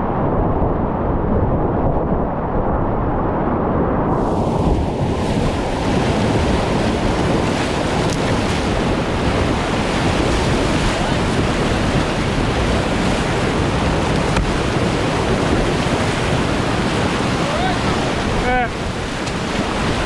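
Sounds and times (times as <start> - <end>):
whitewater rapids rushing: 4.2 - 20.0.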